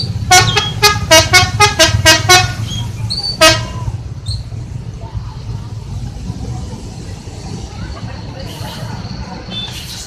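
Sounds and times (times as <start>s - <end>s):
low engine rumble: 0.0s - 10.0s
musical bus horn toots: 0.2s - 2.7s, 3.4s - 3.9s.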